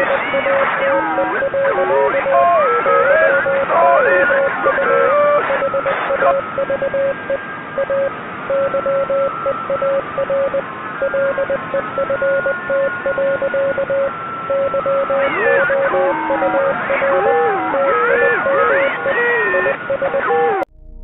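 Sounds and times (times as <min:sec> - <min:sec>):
radio static: 0:00.0 - 0:07.4, 0:11.2 - 0:20.7
faint steady high tones: 0:00.0 - 0:21.0.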